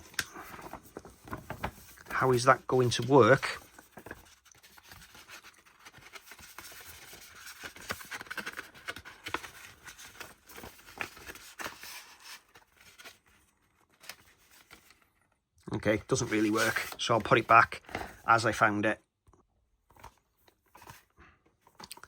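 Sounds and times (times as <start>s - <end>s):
plastic case and cardboard handled: 0.0s - 15.2s.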